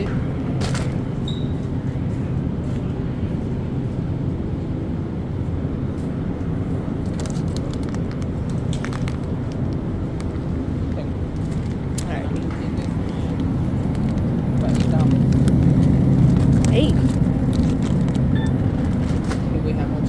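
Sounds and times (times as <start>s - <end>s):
grocery store background rumble: 0.0s - 20.0s
items clicking and rattling: 7.0s - 10.3s, 10.9s - 19.6s.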